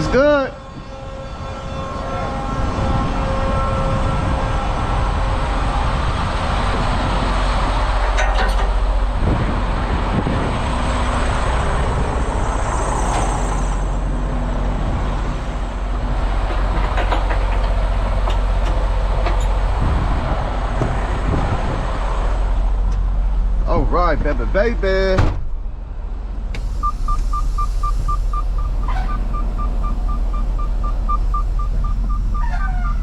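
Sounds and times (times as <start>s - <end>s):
heavy diesel machinery rumbling: 0.0s - 33.0s
metallic knocks and clanks: 8.0s - 9.0s, 16.4s - 19.6s.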